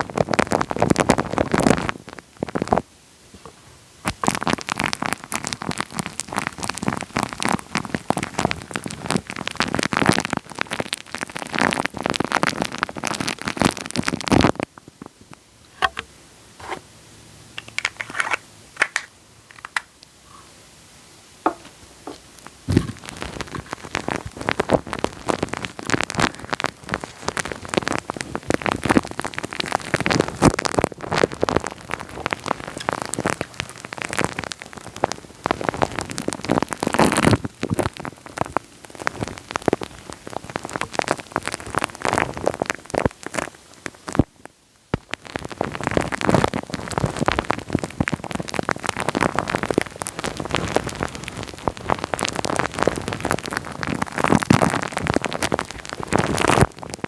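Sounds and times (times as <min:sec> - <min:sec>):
wet clicks and pops on microphone: 0:17.6 - 0:19.9.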